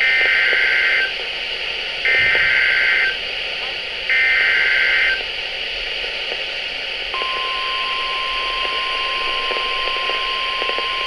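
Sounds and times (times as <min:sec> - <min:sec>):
steady high alarm tone: 0:07.2 - 0:11.0.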